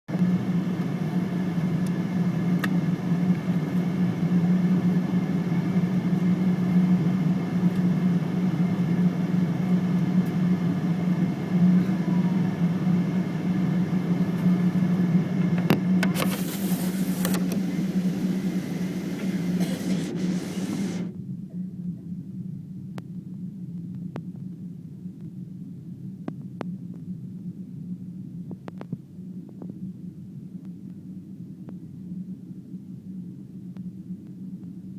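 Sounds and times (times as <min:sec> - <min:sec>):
jet engine cabin drone: 0:00.1 - 0:21.8
short hissy bursts: 0:16.2 - 0:21.1.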